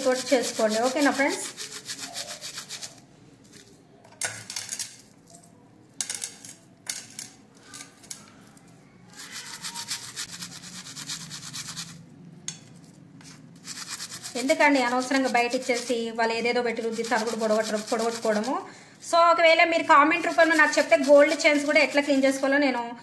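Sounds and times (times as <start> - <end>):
brush scrubbing metal jewellery: 0.0 - 3.0, 9.1 - 12.0, 12.7 - 16.1, 16.7 - 18.6, 20.0 - 22.4.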